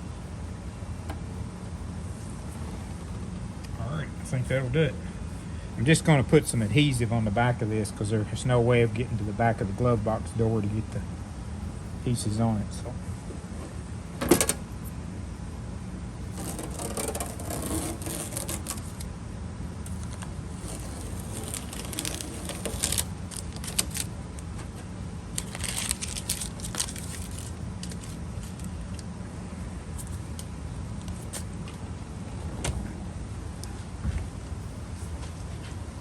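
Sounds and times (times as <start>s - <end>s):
steady low hum: 0.0s - 36.0s
hands rustling small parts: 19.9s - 24.5s, 25.4s - 28.7s.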